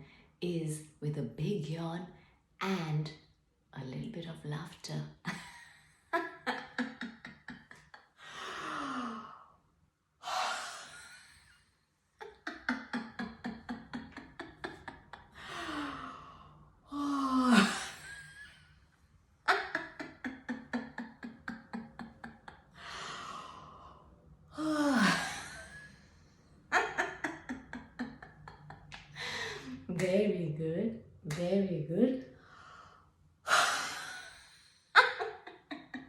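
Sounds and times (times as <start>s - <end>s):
person laughing: 5.3s - 8.2s, 12.2s - 16.0s, 19.5s - 22.7s, 26.7s - 29.8s.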